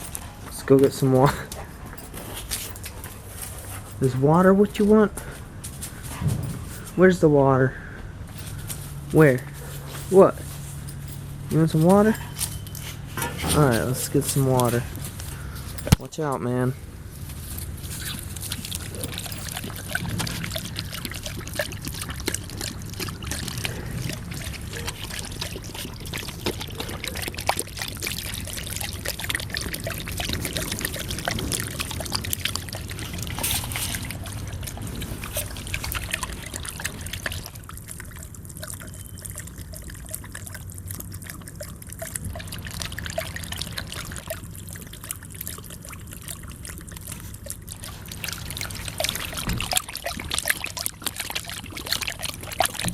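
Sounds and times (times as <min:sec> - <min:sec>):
dog lapping water: 0:00.0 - 0:06.9, 0:08.4 - 0:52.9
faucet water splattering: 0:17.5 - 0:52.9.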